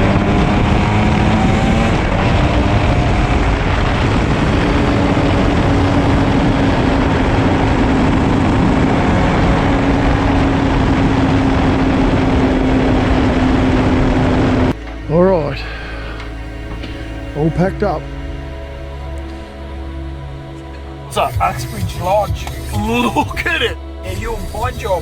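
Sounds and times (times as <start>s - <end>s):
wind noise: 0.0s - 15.0s
dirt bike engine running: 0.0s - 17.3s.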